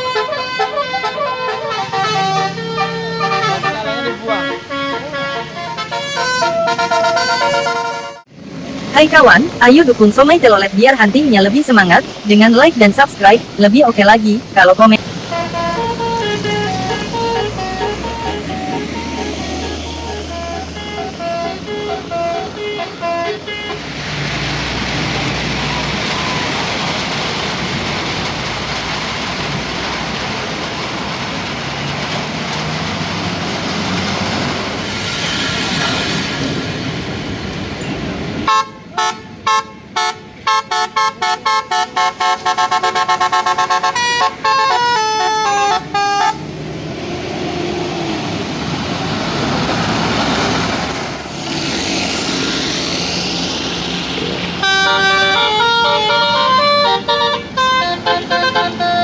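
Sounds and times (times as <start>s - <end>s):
multi-tone bus horn melody: 0.0s - 8.3s, 14.4s - 24.3s, 38.4s - 46.7s, 54.5s - 59.0s
passing traffic: 0.0s - 59.0s.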